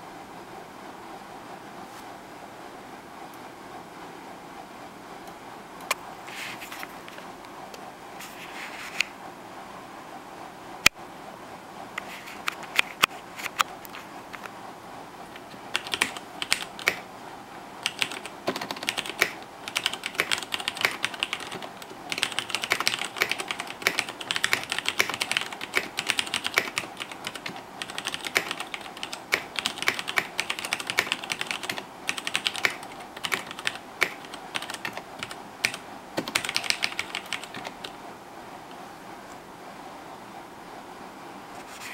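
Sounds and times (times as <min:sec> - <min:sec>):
mechanical keyboard typing: 0:15.4 - 0:17.1, 0:17.8 - 0:38.0.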